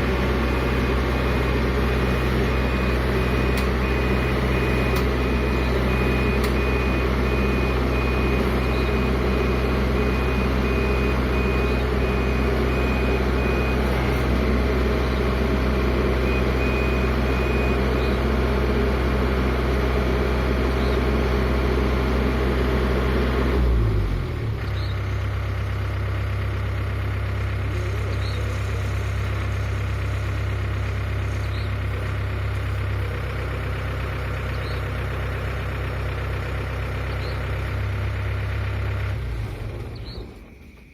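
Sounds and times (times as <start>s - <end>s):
heavy machine engine running: 0.0s - 40.9s
reversing alarm beeping: 0.4s - 18.3s, 39.7s - 40.9s.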